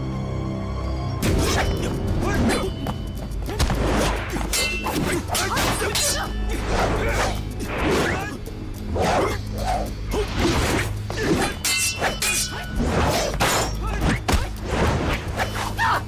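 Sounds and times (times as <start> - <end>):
dramatic score music: 0.0 - 16.0.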